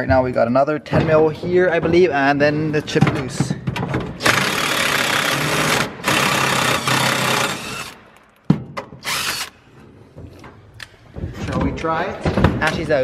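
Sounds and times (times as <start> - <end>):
impact driver running: 4.2 - 8.0, 9.0 - 9.6.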